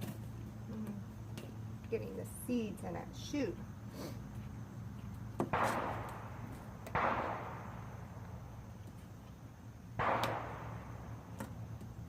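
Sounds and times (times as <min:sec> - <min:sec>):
distant gunshots with echo: 0:05.5 - 0:08.3, 0:10.0 - 0:11.4.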